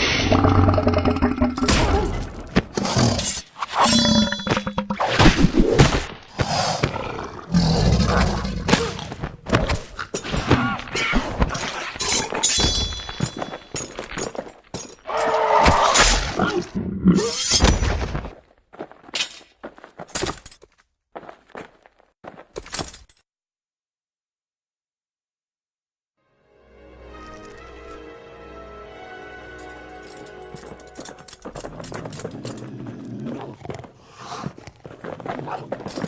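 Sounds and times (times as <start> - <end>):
growling roars: 0.0 - 5.7, 6.3 - 9.8, 31.5 - 36.0
breaking crashes: 1.6 - 6.9
fight blows and thuds: 1.6 - 7.2, 7.9 - 14.6, 15.6 - 16.4, 17.6 - 18.4.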